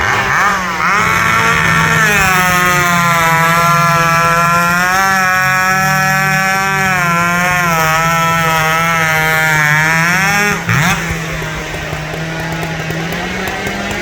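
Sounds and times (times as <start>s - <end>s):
low steady engine drone: 0.0s - 8.9s
chainsaw cutting: 0.0s - 14.0s.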